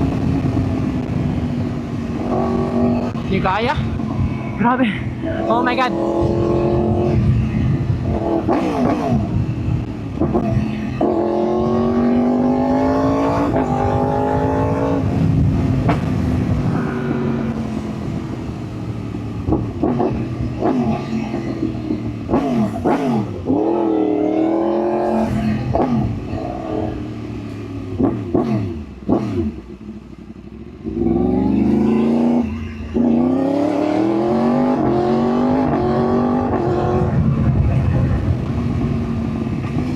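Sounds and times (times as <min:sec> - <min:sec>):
motorcycle engine revving through gears: 0:00.0 - 0:39.9.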